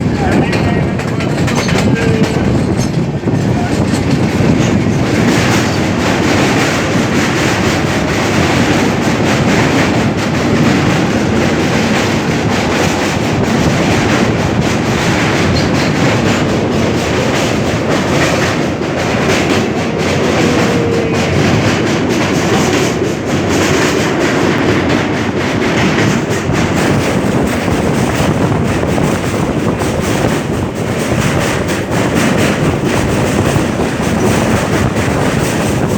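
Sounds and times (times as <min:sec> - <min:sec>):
train rumbling over bridge: 0:00.0 - 0:35.9
train wheels clattering: 0:00.0 - 0:35.9.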